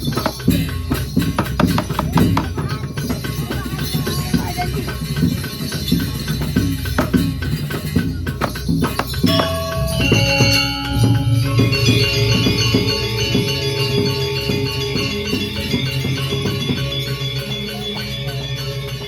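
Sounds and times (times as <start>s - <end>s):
drum strokes: 0.0s - 19.0s
ringing metal percussion: 0.0s - 19.0s
held gong-like metallic tones: 9.1s - 19.0s.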